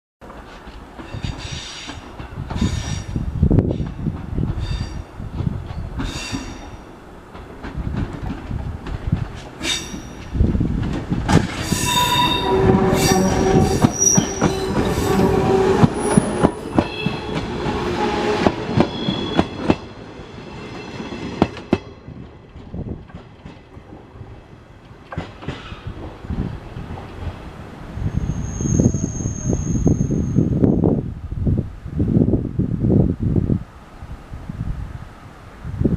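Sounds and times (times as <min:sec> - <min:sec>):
train wheels clacking: 0:00.2 - 0:19.9, 0:20.6 - 0:27.4
wheel squeal: 0:11.6 - 0:18.2, 0:28.0 - 0:30.5.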